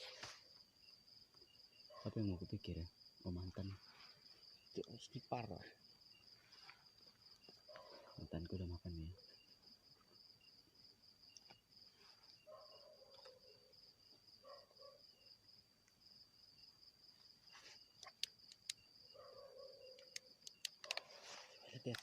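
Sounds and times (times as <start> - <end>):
insects trilling: 0.0 - 22.0
sharp clicks: 18.0 - 18.8, 19.9 - 21.1, 21.7 - 22.0.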